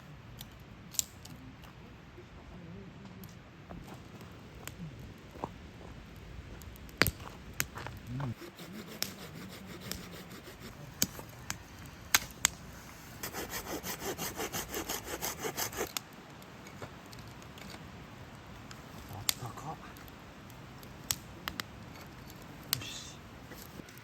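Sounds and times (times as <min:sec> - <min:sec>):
hand saw cutting wood: 0:08.4 - 0:10.8, 0:13.2 - 0:16.0.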